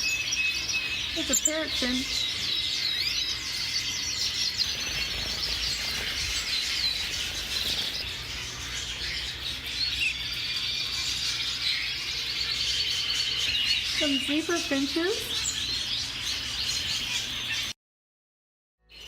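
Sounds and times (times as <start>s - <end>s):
finches chirping: 0.0s - 17.8s.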